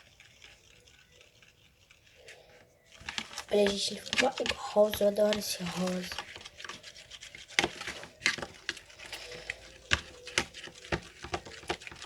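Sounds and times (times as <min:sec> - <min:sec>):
stirrer tapping a small pot: 0:02.8 - 0:12.0.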